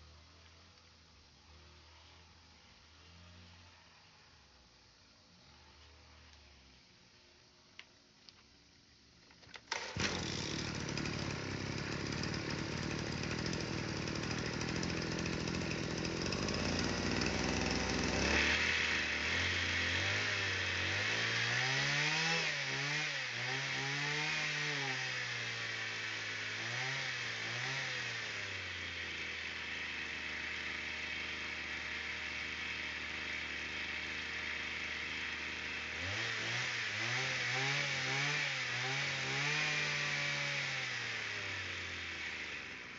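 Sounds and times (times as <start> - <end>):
brush cutter engine revving: 9.6 - 42.9.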